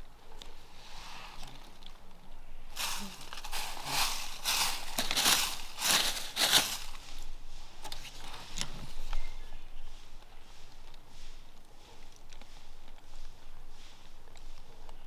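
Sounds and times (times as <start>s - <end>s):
footsteps crunching dry leaves: 2.7s - 10.8s.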